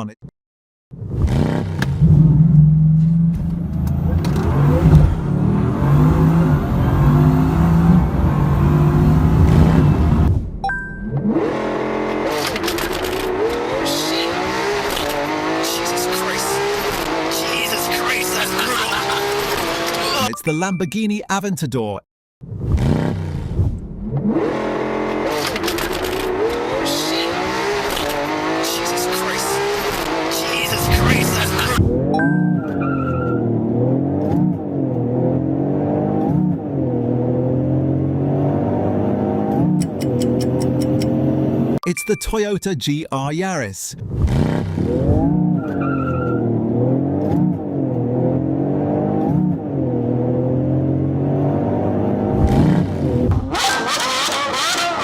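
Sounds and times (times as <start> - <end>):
car engine revving: 0.9 - 20.3, 22.4 - 41.8, 44.0 - 55.0
tire squeal: 32.4 - 33.6, 45.3 - 46.6, 53.5 - 55.0.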